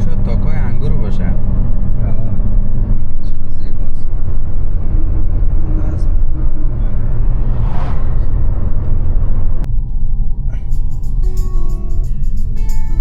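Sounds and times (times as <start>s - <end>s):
car road and engine rumble: 0.0s - 13.0s
rushing noise: 6.4s - 10.4s.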